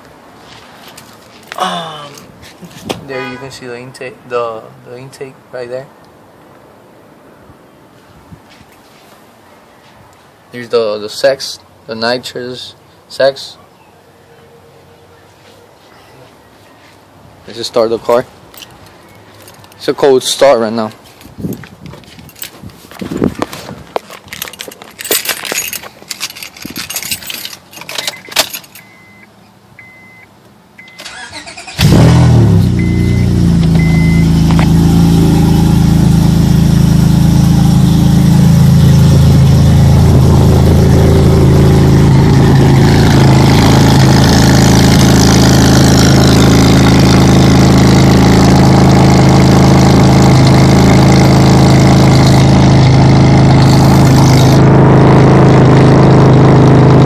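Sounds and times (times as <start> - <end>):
short high beeps: 28.1 - 31.1, 32.8 - 34.4
car engine idling: 31.6 - 57.0.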